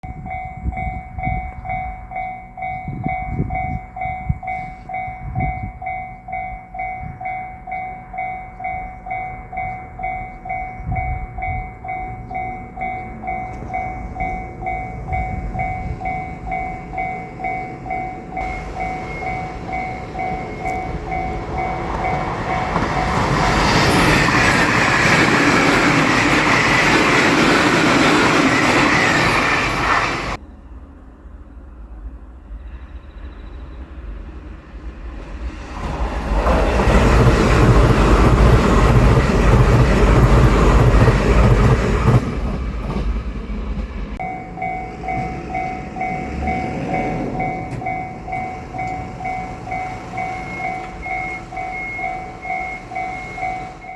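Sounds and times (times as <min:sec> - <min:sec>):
level crossing alarm ringing: 0:00.0 - 0:30.4, 0:44.2 - 0:53.9
electric train rushing past: 0:00.0 - 0:53.9.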